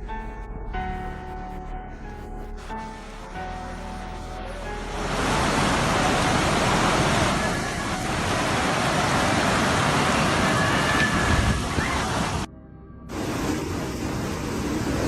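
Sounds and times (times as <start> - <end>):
rain: 4.8 - 12.5, 13.1 - 15.0
storm wind: 4.9 - 12.5.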